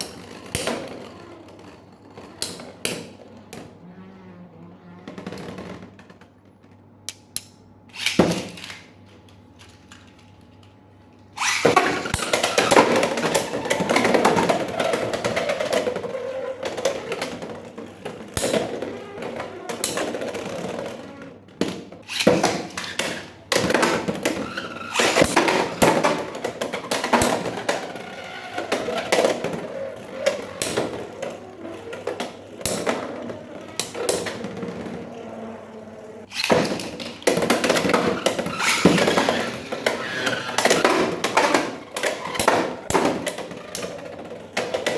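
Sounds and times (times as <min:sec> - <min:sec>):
spinning top launched: 0:11.4 - 0:14.4.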